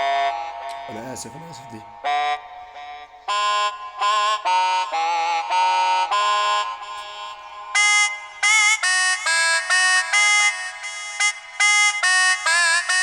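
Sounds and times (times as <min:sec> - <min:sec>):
electronic keyboard melody: 0:00.0 - 0:13.0.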